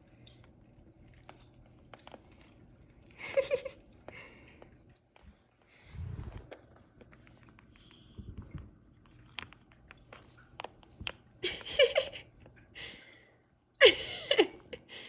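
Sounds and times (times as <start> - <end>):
person laughing: 3.2 - 3.8, 13.8 - 14.8.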